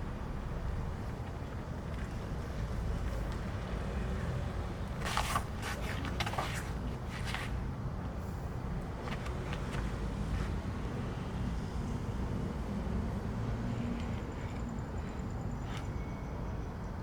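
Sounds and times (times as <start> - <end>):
short scrapes and scuffs: 4.2 - 11.0.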